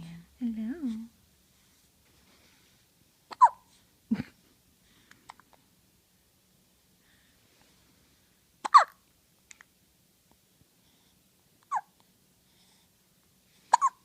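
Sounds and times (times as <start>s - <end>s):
baby hiccuping: 3.3s - 3.7s, 8.6s - 9.0s, 11.6s - 12.0s, 13.7s - 14.0s.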